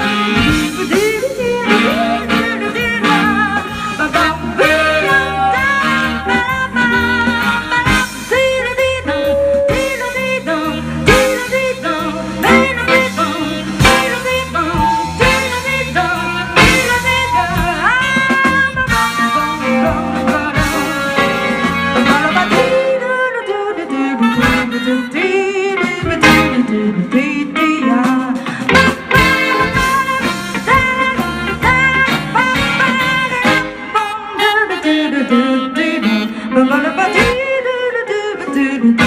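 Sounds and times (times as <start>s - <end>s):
walking bass: 0.0s - 23.0s, 28.5s - 34.0s
lead melody line: 0.0s - 27.9s, 28.7s - 37.6s
drums: 0.0s - 39.0s
jazz band playing swing: 0.0s - 39.0s.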